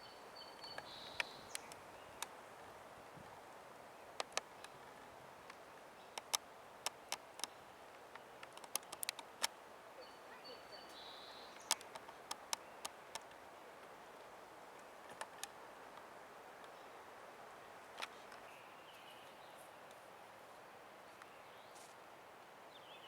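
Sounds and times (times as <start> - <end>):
sharp irregular clicks: 6.2 - 7.5, 8.1 - 9.6, 11.6 - 13.3.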